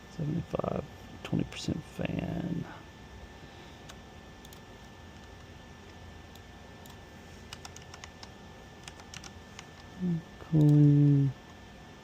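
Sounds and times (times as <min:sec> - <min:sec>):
low background hum: 0:00.0 - 0:12.0
keyboard and mouse clicks: 0:03.9 - 0:04.6, 0:06.3 - 0:09.9.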